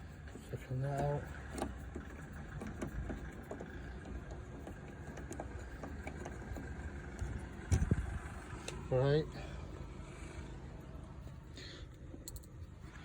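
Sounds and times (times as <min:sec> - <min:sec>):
low steady rumble: 0:00.0 - 0:13.0
hand tool clicks and taps: 0:12.2 - 0:12.6.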